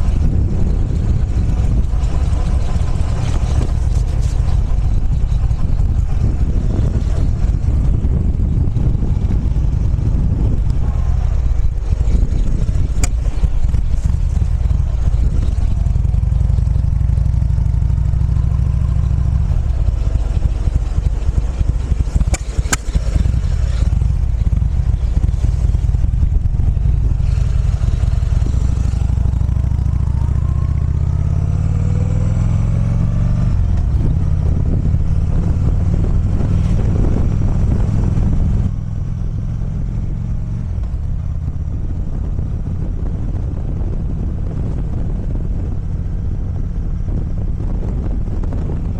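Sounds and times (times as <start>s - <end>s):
motorcycle engine running: 0.0s - 48.9s
sharp clicks: 22.0s - 23.9s.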